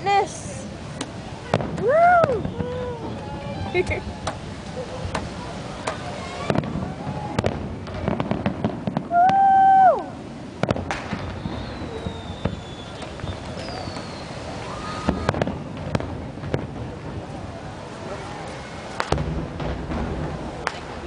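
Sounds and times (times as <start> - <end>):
fireworks bangs and crackles: 0.0 - 21.0
falling whistles: 11.2 - 15.6.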